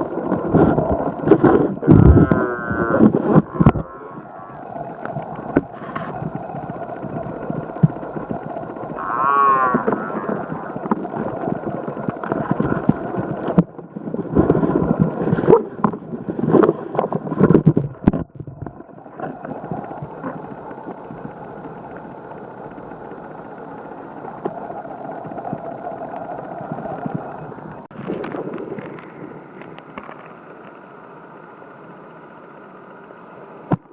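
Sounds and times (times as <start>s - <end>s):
steady background hum: 0.0s - 33.9s
wavering moo-like call: 1.8s - 4.9s, 9.0s - 10.8s.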